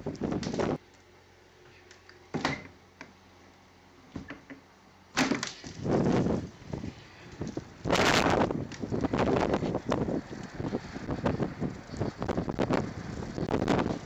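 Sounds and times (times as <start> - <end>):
wind gusting against microphone: 5.8 - 14.0.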